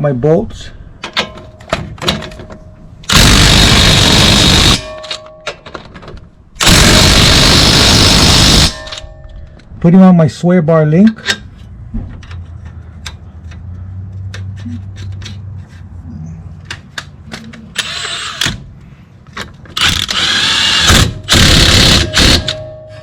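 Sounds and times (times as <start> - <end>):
impact wrench bursts: 3.1 - 4.9, 6.6 - 9.0, 17.8 - 18.6, 19.8 - 22.6.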